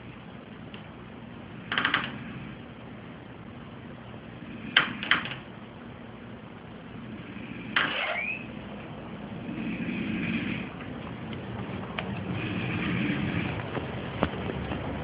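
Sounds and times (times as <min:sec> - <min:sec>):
low steady hum: 0:00.0 - 0:15.0
man snoring: 0:07.1 - 0:07.8, 0:09.4 - 0:10.8, 0:12.2 - 0:13.6.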